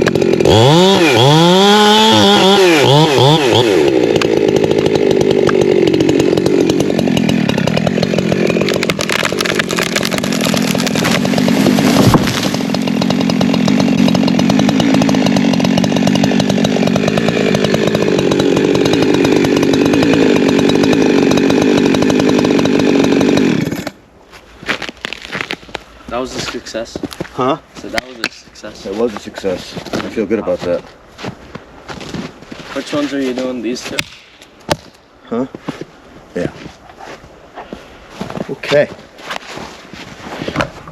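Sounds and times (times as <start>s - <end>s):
chainsaw cutting under load: 0.0s - 24.0s
wood cracking: 0.0s - 24.0s, 24.6s - 30.8s.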